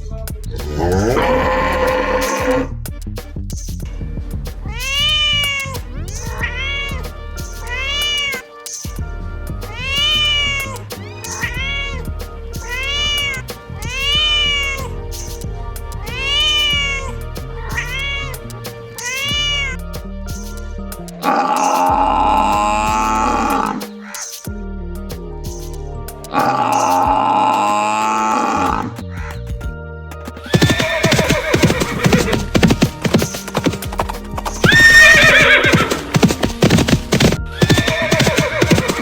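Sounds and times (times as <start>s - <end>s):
background music: 0.0s - 39.0s
cat meowing: 4.7s - 8.4s, 9.7s - 15.0s, 16.0s - 19.8s, 34.6s - 36.0s.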